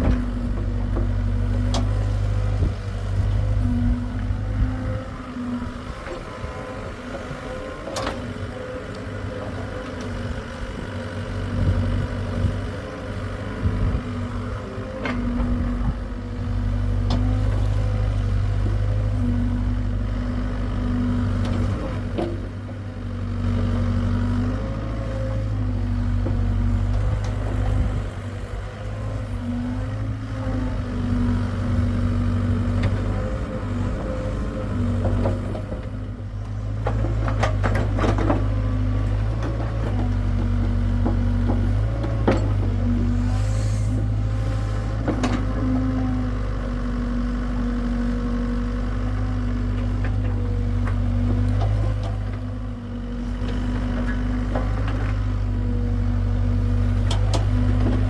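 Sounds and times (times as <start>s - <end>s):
excavator diesel engine rumble: 0.0s - 58.0s
hydraulic whine: 43.1s - 44.9s.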